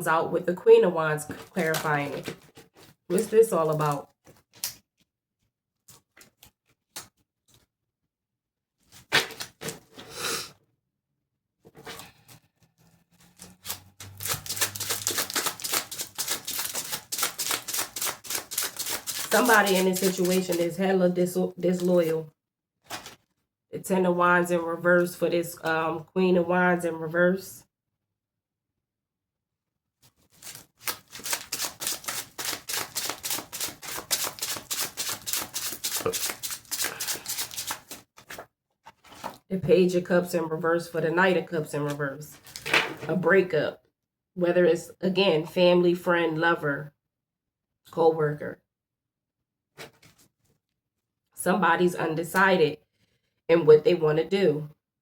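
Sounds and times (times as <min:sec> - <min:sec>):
cards being shuffled: 0:13.4 - 0:20.7, 0:30.1 - 0:38.4.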